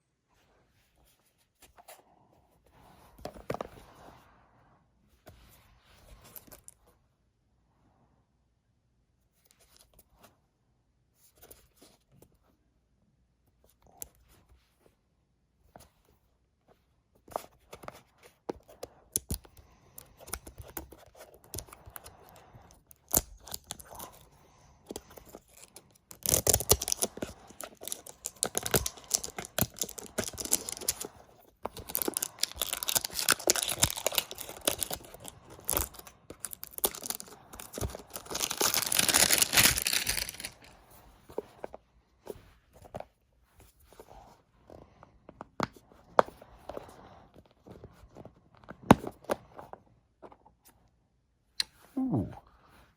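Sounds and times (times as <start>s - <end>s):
clicks and rustles: 22.6s - 41.7s
plastic packaging tearing and crinkling: 26.1s - 31.1s, 31.8s - 40.7s.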